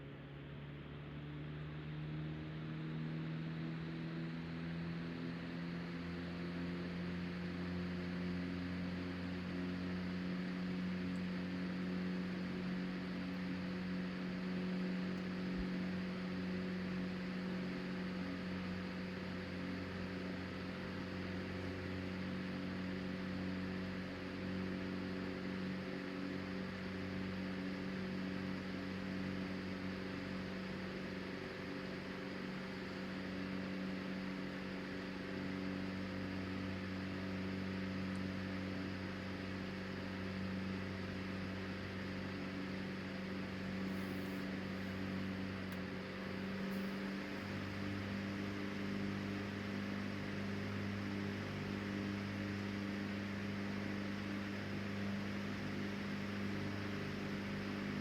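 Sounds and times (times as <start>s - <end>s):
electric fan motor hum: 6.3s - 58.0s.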